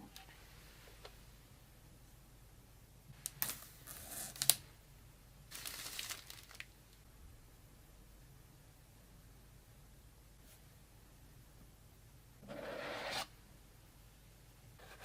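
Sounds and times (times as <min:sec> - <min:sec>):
rustling and crinkling: 0:05.5 - 0:06.8.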